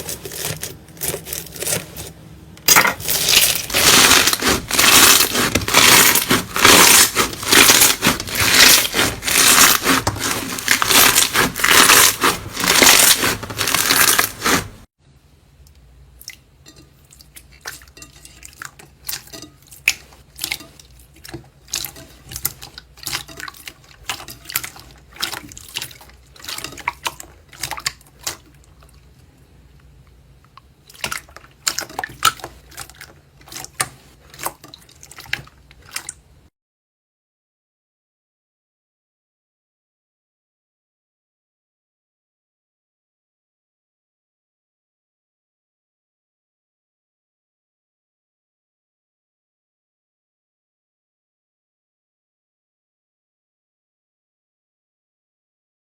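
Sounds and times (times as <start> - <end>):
slime crackling and popping: 2.7 - 14.8
slime squished by hand: 2.7 - 14.8.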